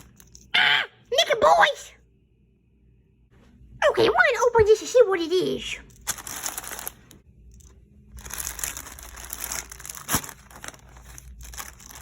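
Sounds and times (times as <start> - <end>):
plastic packaging crinkling: 6.0 - 12.0.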